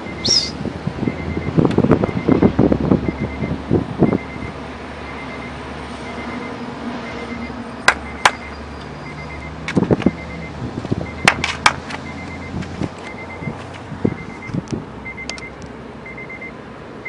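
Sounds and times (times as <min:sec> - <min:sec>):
steady rumble: 0:00.0 - 0:05.2, 0:09.1 - 0:16.5.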